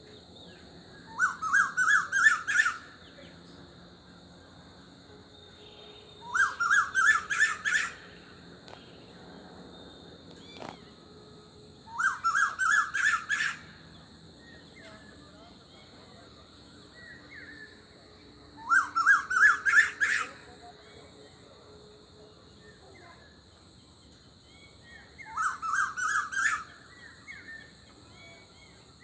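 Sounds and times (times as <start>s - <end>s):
high drone of insects: 0.0s - 29.0s
bird calling: 1.0s - 3.0s, 6.2s - 8.8s, 10.3s - 10.9s, 11.9s - 13.8s, 18.6s - 20.5s.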